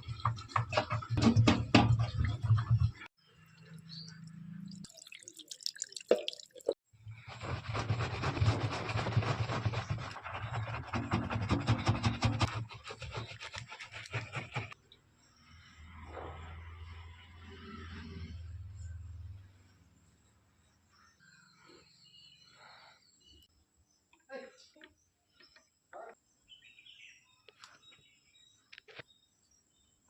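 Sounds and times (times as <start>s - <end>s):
scrubbing rubber door gasket: 7.3s - 14.8s.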